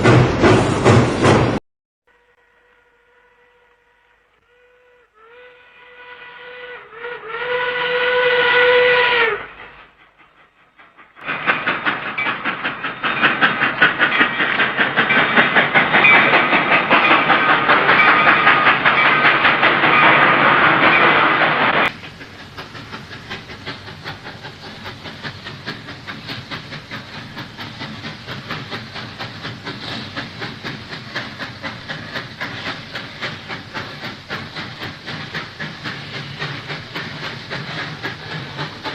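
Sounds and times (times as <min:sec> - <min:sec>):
steam locomotive chuffing: 0:00.0 - 0:01.6, 0:03.2 - 0:38.9
steam locomotive whistle: 0:02.2 - 0:09.8.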